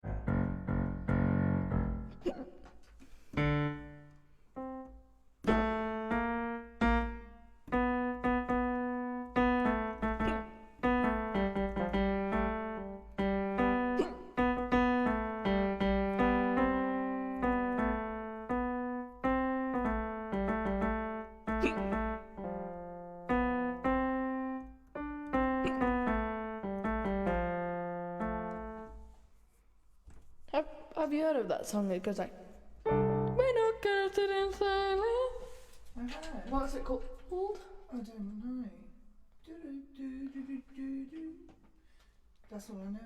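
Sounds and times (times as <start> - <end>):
piano playing slow tune: 0.0 - 2.2, 3.4 - 29.1, 32.8 - 33.8.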